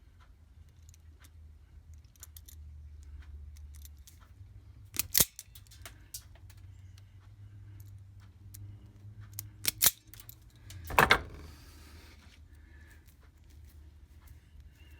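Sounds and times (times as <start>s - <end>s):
wire strippers clicking and snipping: 4.9s - 6.6s, 9.4s - 11.6s.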